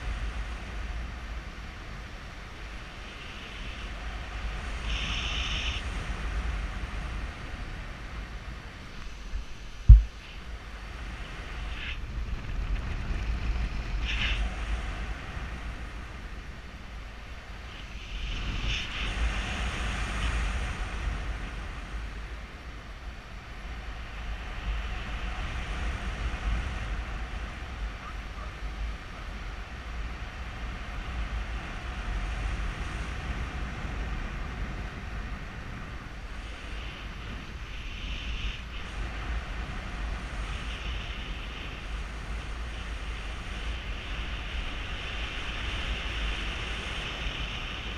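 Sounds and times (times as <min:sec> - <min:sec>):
wind buffeting microphone: 0:00.0 - 0:47.9.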